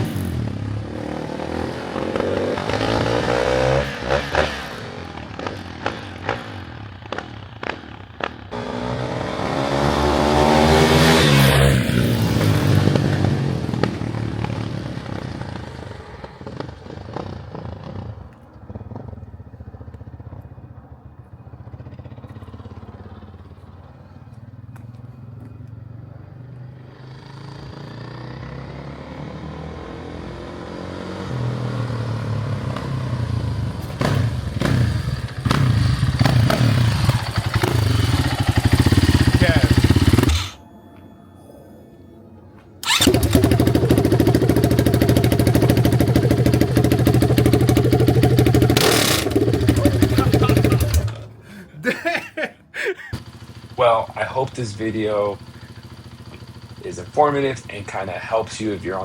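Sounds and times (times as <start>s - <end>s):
dirt bike engine revving: 0.0s - 18.2s, 33.8s - 40.6s, 42.8s - 51.3s, 53.0s - 59.0s.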